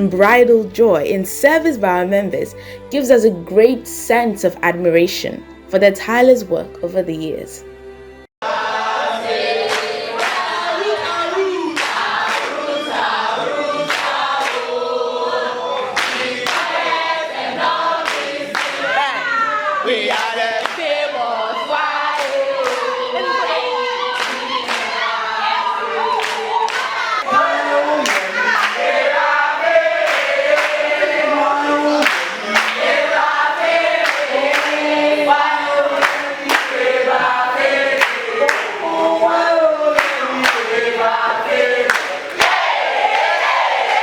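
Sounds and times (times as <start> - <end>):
choir singing in harmony: 7.9 - 44.0
sharp beat strokes: 27.2 - 43.6.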